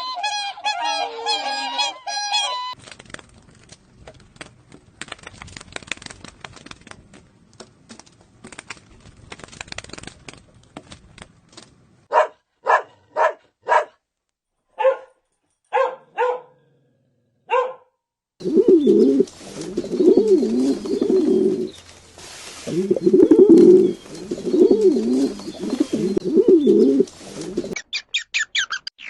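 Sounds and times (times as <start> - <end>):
scratchy crackling noise: 2.8 - 12.0, 18.4 - 27.8
dog barking: 12.1 - 14.0, 14.7 - 16.7, 17.4 - 18.0.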